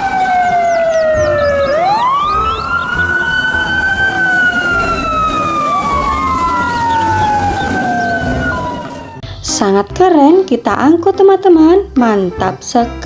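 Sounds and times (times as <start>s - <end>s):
fire truck siren wailing: 0.0s - 9.3s.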